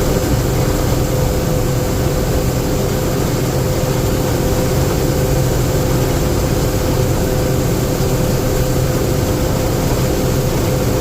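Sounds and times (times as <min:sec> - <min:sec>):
combine harvester running: 0:00.0 - 0:11.0.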